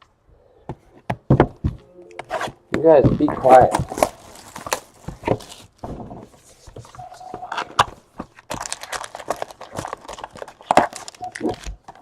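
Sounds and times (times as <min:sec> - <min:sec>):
card pack wrappers crinkling: 0:03.1 - 0:05.8, 0:06.5 - 0:12.0.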